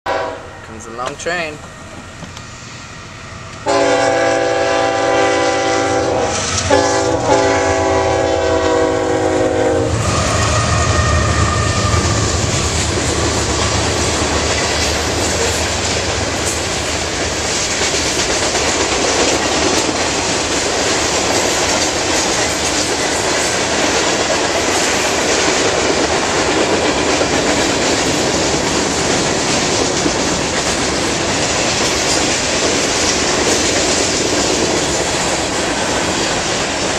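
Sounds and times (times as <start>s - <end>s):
train horn blasts: 0.0s - 0.7s, 3.6s - 12.6s
train cars rumbling and clattering: 0.1s - 36.9s.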